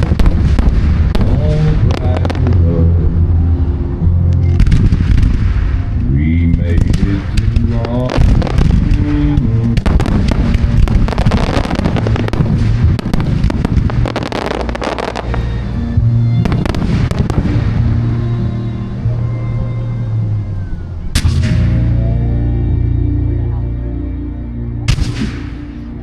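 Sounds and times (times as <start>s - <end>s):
fireworks bursting and crackling: 0.0s - 2.8s, 4.5s - 15.7s, 16.4s - 18.0s
loud music playing: 0.0s - 26.0s.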